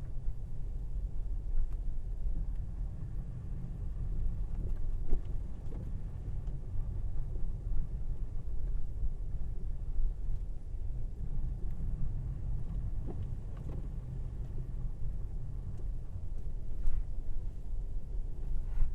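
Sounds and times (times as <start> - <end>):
tyre and road noise: 11.2 - 17.2.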